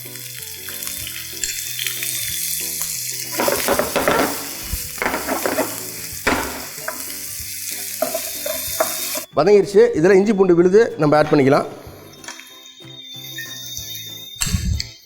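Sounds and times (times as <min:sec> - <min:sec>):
shallots sizzling in a pan: 0:00.0 - 0:09.3
soft background music: 0:00.0 - 0:15.0
stirring in a pan: 0:03.2 - 0:09.3.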